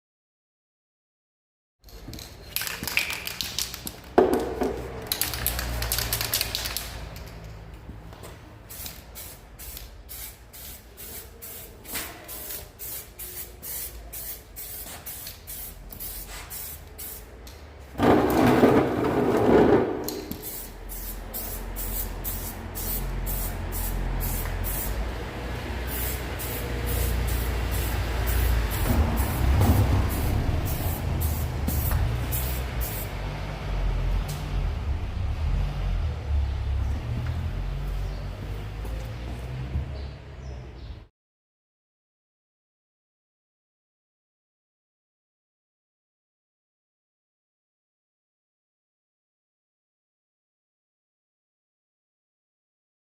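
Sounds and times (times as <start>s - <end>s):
aerosol spray can hissing: 8.7s - 17.3s, 20.2s - 25.0s, 25.9s - 33.1s.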